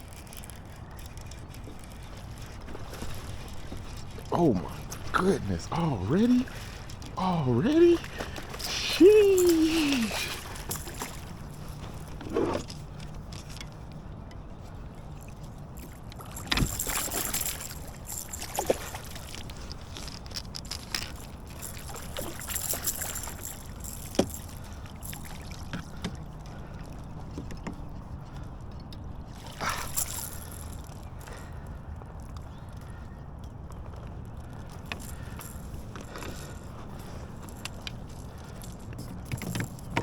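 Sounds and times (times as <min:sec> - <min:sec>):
water splashing around kayak: 0:00.0 - 0:40.0.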